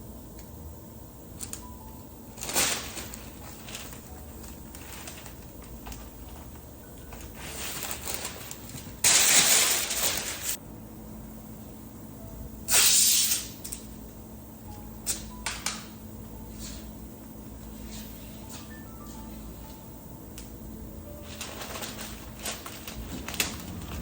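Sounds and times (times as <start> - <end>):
compressed air blasts hissing: 12.7 - 13.5.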